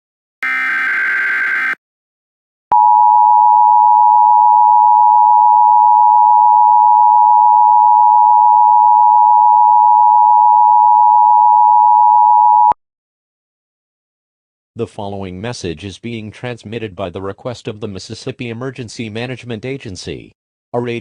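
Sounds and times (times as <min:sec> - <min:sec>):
two-tone alarm: 0:00.4 - 0:01.8.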